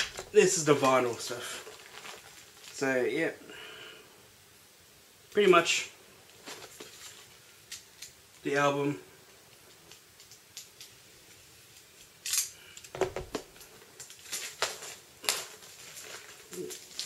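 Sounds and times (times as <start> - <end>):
clicks and rustles of packaging: 0.0 - 2.8, 6.3 - 8.4, 9.5 - 17.0
cardboard packaging scrape: 1.4 - 2.8.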